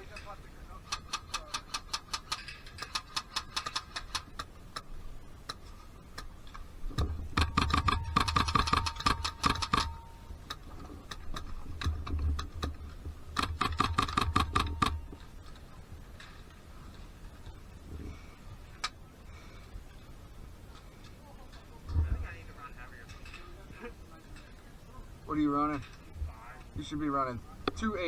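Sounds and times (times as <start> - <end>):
airsoft gun shots: 7.4 - 10.0.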